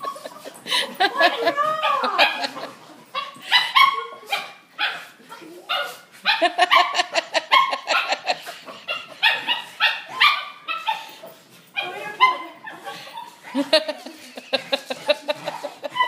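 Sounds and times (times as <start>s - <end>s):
puppies whining and yipping: 15.5s - 16.0s.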